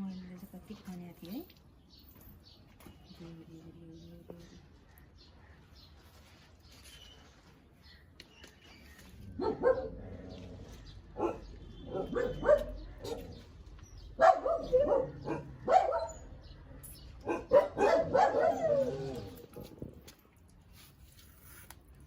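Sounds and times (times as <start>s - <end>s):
dog barking: 9.4s - 10.0s, 11.2s - 13.4s, 14.2s - 16.4s, 17.2s - 19.3s.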